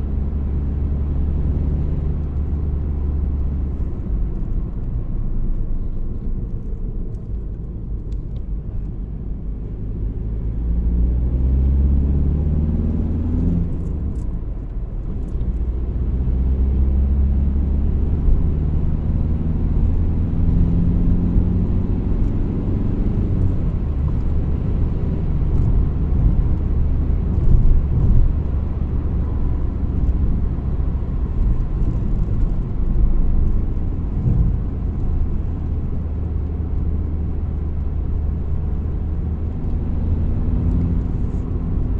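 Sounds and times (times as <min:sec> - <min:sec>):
diesel car engine revving: 0:09.9 - 0:41.9.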